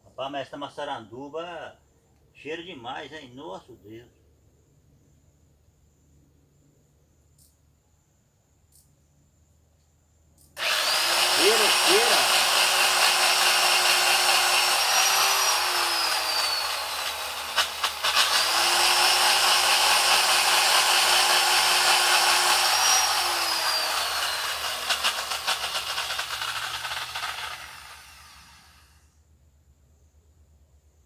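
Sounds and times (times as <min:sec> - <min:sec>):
electric drill boring into wood: 0:10.6 - 0:28.9.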